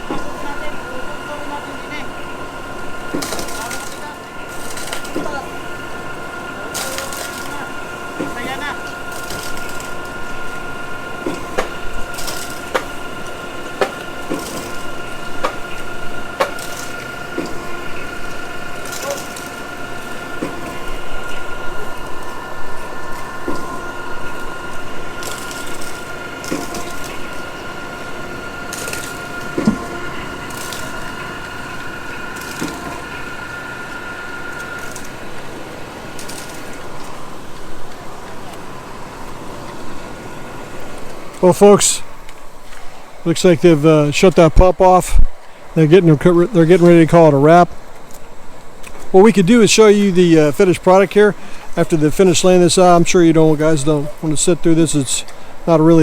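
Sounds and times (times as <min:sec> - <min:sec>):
concrete pump whining: 0:00.0 - 0:56.0.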